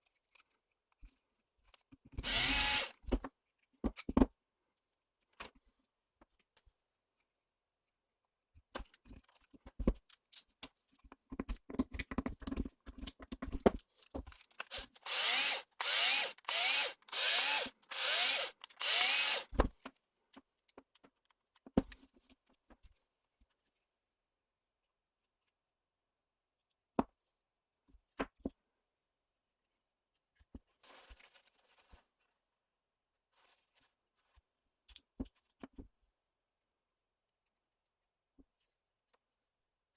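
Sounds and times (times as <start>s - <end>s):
electric drill motor bursts: 2.2s - 3.0s, 14.7s - 19.6s.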